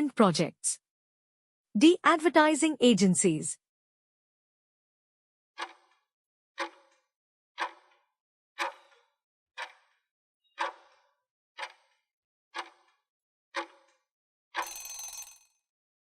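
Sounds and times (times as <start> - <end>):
timer clock ticking: 5.6 - 5.8, 6.6 - 6.9, 7.6 - 7.9, 8.6 - 9.0, 9.6 - 9.9, 10.6 - 11.0, 11.6 - 12.0, 12.6 - 12.9, 13.6 - 13.9.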